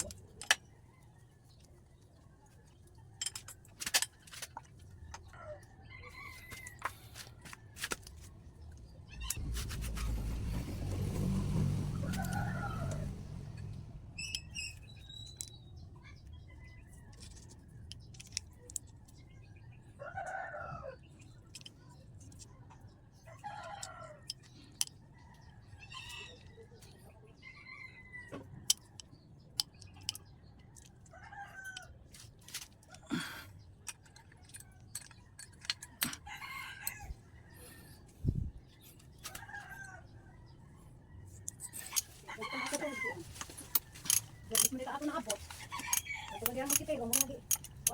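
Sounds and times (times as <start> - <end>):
rooster calling: 42.2 - 43.3
sharp clicks and knocks: 43.4 - 47.9.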